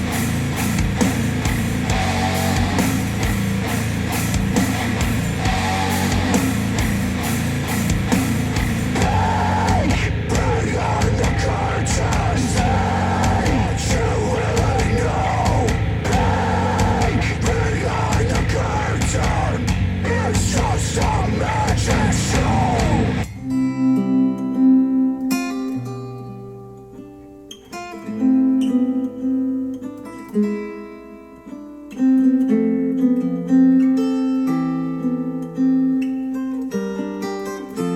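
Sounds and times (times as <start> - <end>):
heavy rock music through speakers: 0.0 - 23.3
acoustic guitar chords: 0.0 - 37.9.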